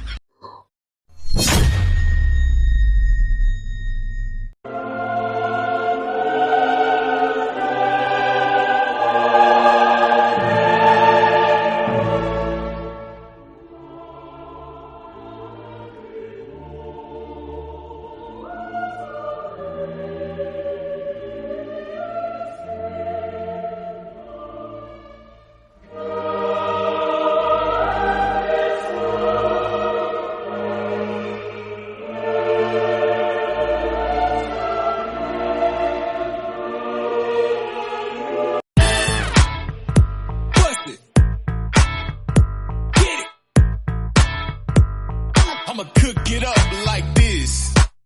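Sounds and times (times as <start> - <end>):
choir singing held chords: 4.7 - 39.2.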